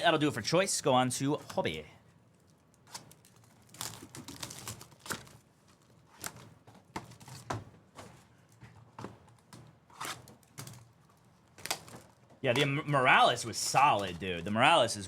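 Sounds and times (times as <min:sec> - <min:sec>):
packaging crinkling: 0:02.3 - 0:07.4.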